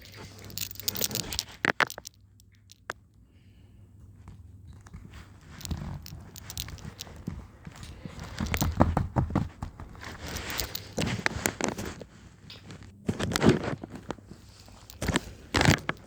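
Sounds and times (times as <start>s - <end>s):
rustling and crackling handling noise: 0.0s - 3.0s, 4.1s - 16.0s.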